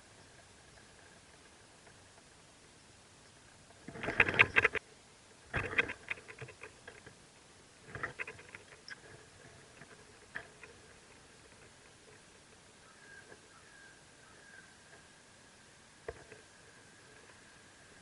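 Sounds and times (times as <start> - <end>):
rustling and scratching in nest: 3.8 - 4.8, 5.5 - 7.0, 7.9 - 12.3.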